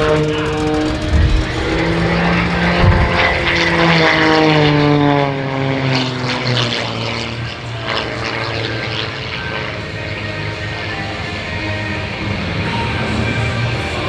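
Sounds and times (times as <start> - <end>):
plane engine and propeller: 0.0 - 14.0.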